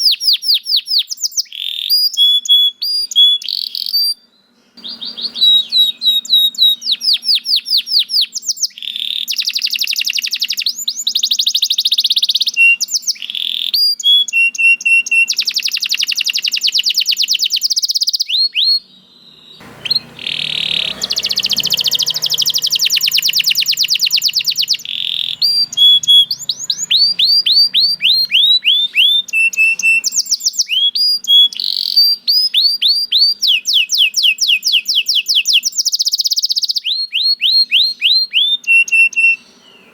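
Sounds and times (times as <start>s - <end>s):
canary singing: 0.0s - 39.9s.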